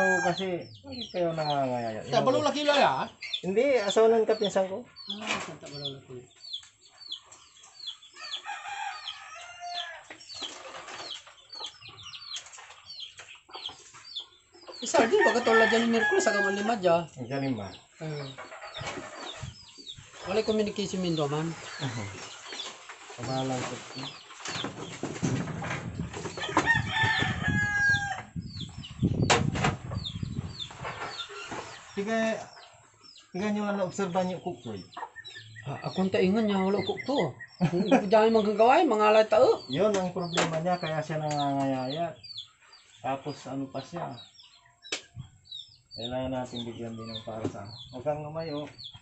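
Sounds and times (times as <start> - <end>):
drawn-out chicken call: 0.0 - 0.5, 13.7 - 17.0, 26.3 - 28.8
rooster crowing: 0.0 - 0.5, 8.2 - 10.1, 14.9 - 17.0, 26.4 - 28.3
fowl chirping: 0.0 - 24.7, 26.2 - 49.0
chicks peeping: 0.0 - 49.0.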